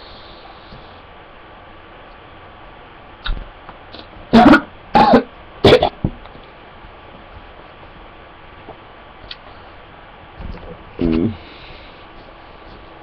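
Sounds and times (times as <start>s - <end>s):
person coughing: 4.3s - 6.0s.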